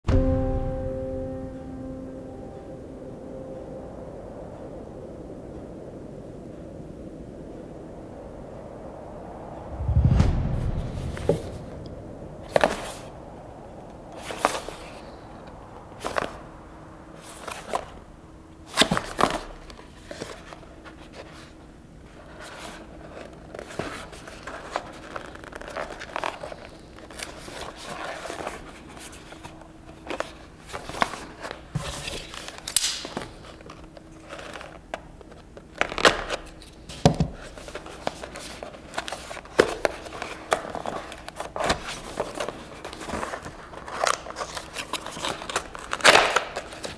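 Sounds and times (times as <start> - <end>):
plastic and cardboard crinkling: 18.7 - 46.9.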